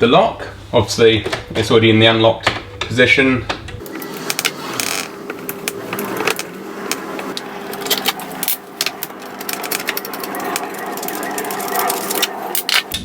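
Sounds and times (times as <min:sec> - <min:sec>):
small motor running: 0:03.8 - 0:13.0.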